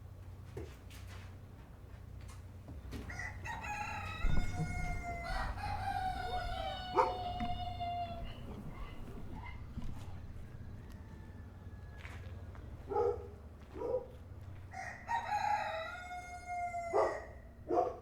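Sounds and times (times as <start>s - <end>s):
second lower rooster crow: 3.1s - 9.0s, 10.6s - 12.3s, 14.7s - 17.4s
rooster crowing: 3.1s - 9.5s, 10.5s - 12.3s, 14.7s - 17.4s.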